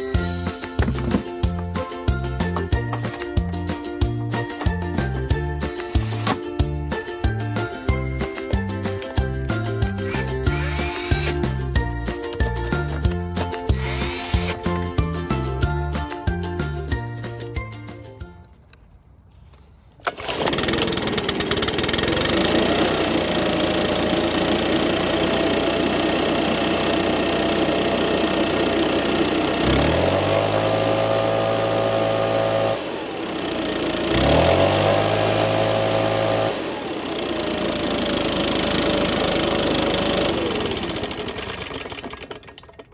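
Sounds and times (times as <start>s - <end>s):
leaf blower engine revving: 5.6s - 6.6s, 9.8s - 11.6s, 13.6s - 15.0s, 20.0s - 42.8s.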